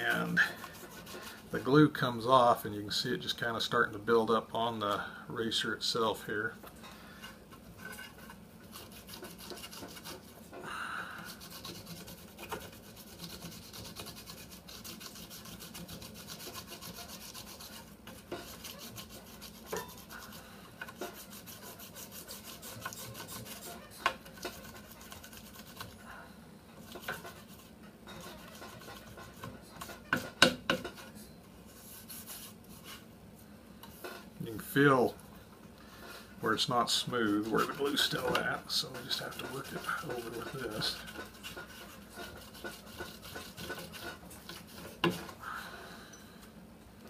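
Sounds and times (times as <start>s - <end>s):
stick scrubbing on plywood: 0.0s - 1.5s, 7.9s - 10.4s, 11.3s - 26.0s, 26.9s - 33.0s, 36.5s - 45.4s.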